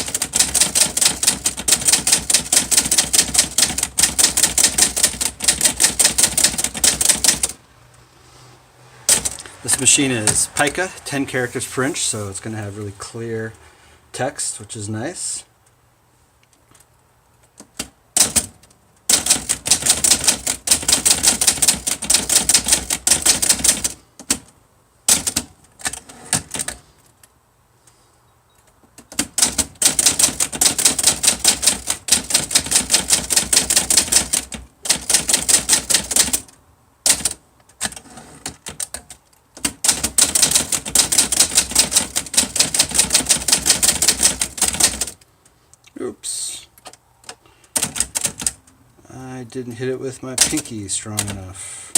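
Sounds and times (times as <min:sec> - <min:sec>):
manual typewriter typing: 0:00.0 - 0:07.6, 0:09.1 - 0:10.7, 0:17.4 - 0:27.1, 0:28.6 - 0:45.3, 0:47.6 - 0:48.8, 0:50.3 - 0:51.5.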